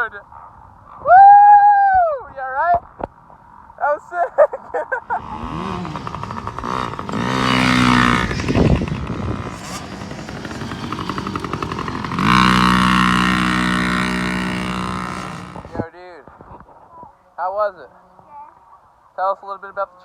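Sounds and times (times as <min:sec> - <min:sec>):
dirt bike engines revving: 0:04.7 - 0:15.9
dirt bike passing by: 0:05.0 - 0:15.9.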